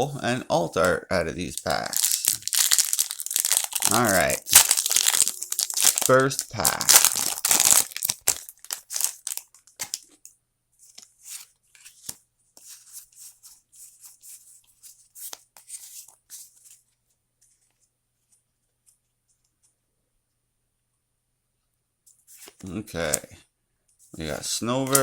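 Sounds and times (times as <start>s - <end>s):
foil wrapper crinkling: 1.6s - 10.2s.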